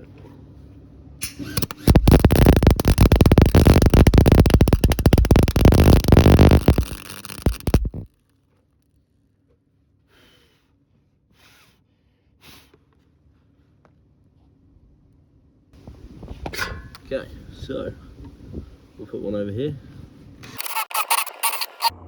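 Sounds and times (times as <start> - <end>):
welding arc crackling: 1.4 - 8.1, 20.6 - 22.0.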